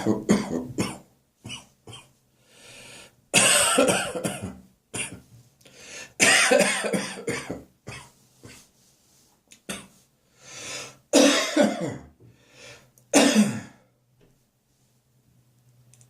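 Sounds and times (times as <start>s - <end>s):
person coughing: 0.0s - 2.2s, 3.4s - 5.3s, 6.2s - 8.6s, 9.6s - 10.0s, 11.1s - 12.2s, 13.1s - 13.9s.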